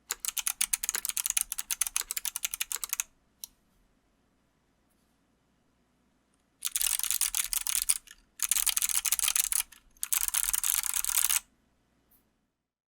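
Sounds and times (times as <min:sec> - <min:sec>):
mechanical keyboard typing clicks: 0:00.0 - 0:03.1, 0:06.6 - 0:11.4.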